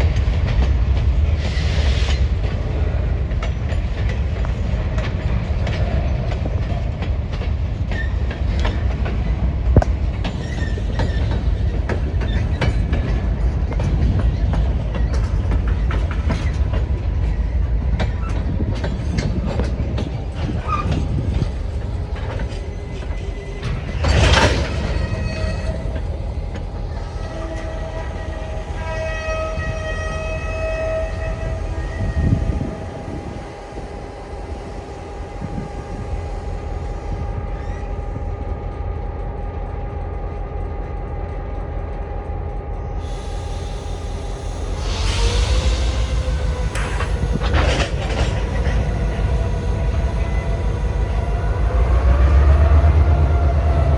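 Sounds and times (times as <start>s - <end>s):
freight train rumbling: 0.0s - 53.9s.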